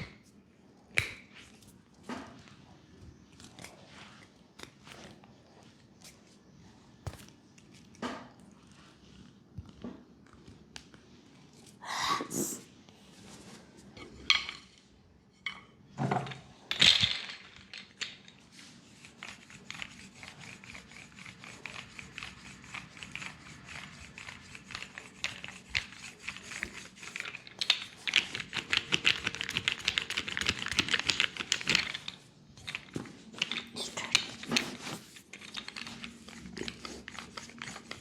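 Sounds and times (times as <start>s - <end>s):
hand slaps: 1.0s - 1.3s.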